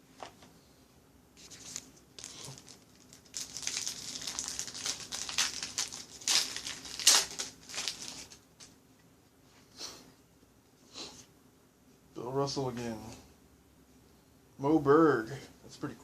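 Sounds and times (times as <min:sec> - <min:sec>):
wrapper crinkling and tearing: 0:01.4 - 0:08.7.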